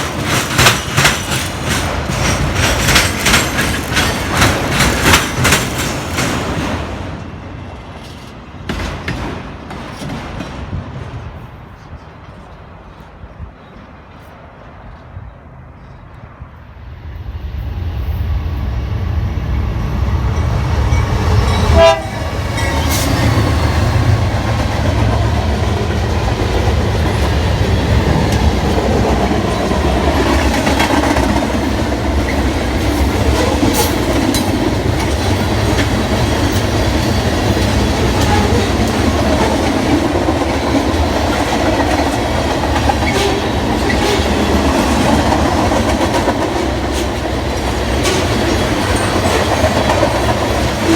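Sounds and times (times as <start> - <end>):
train wheels clacking: 0.0 - 13.2, 20.3 - 50.9
locomotive air horn: 21.6 - 23.1.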